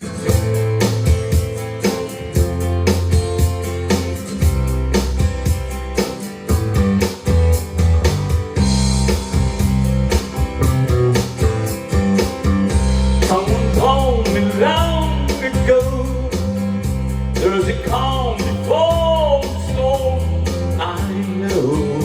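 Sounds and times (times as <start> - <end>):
rock guitar and bass: 0.0 - 22.0
steady drum beat: 0.0 - 22.0
man singing: 13.2 - 22.0.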